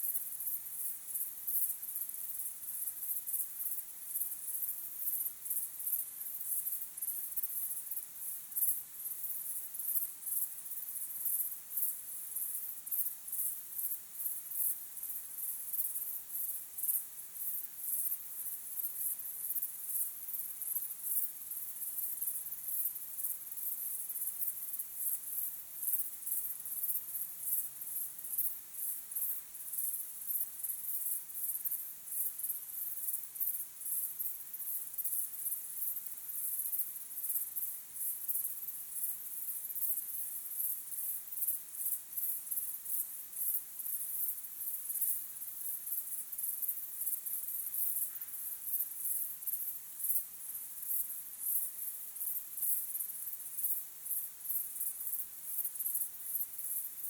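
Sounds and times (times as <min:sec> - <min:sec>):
crickets chirping: 0:00.0 - 0:56.9.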